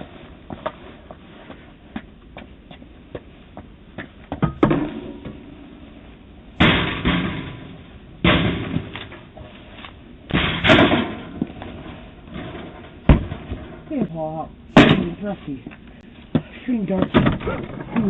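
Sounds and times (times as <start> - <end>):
door banging: 6.6 - 9.5, 10.3 - 14.0, 16.4 - 18.0.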